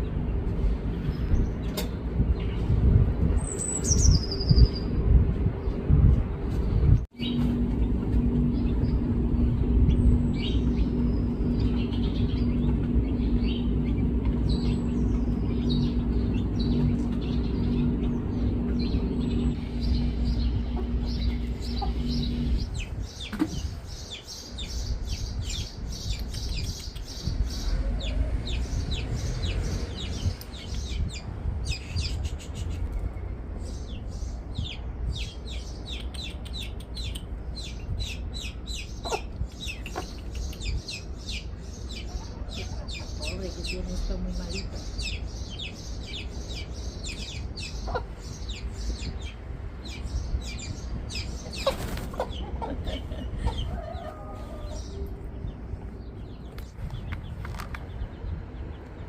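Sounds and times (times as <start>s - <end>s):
small birds chirping: 0.0s - 5.9s, 6.5s - 59.0s
low mechanical hum: 0.0s - 59.0s.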